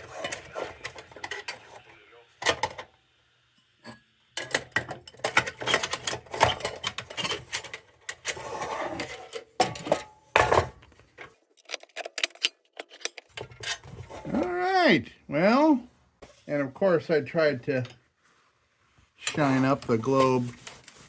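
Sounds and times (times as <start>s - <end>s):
tin and glass lantern parts clicking: 11.5s - 13.3s.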